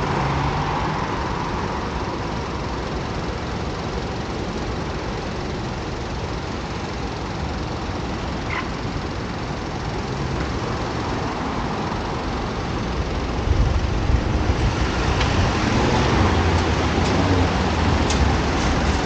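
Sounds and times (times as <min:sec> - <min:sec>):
passing cars: 0:00.0 - 0:02.9, 0:10.0 - 0:19.0
deep traffic rumble: 0:00.0 - 0:19.0.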